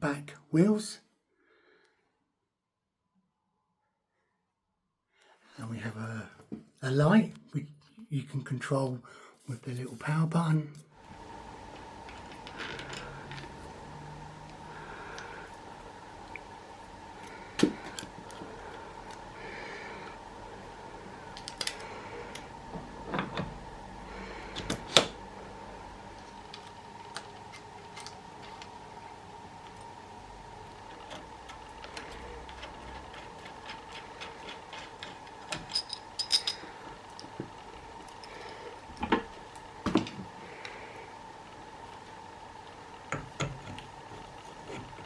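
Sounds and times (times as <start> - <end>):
faint steady hum: 5.1 - 45.0.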